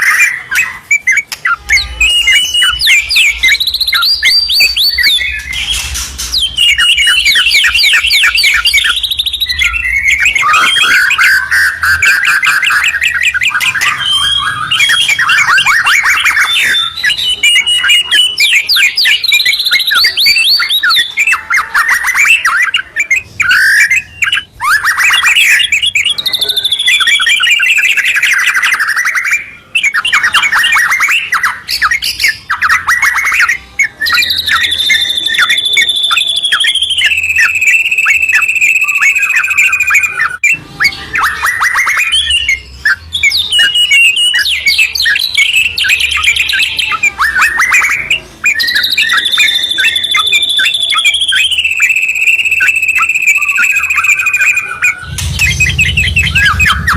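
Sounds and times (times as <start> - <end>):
birds singing trills: 0.0 - 56.9
whistled notes gliding downward: 47.1 - 56.9.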